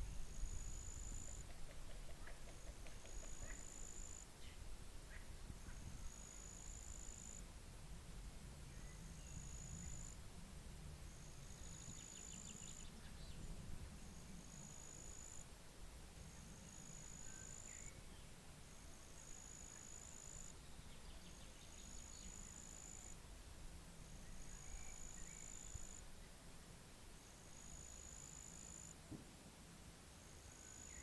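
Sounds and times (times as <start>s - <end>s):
low wind rumble: 0.0s - 1.8s
faint bird chirps: 0.0s - 7.4s, 16.6s - 18.4s, 24.2s - 26.3s.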